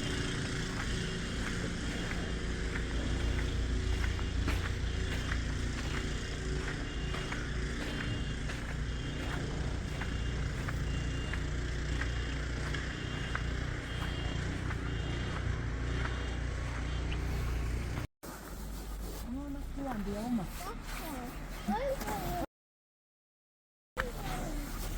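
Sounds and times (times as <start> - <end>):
engine running: 0.0 - 18.6.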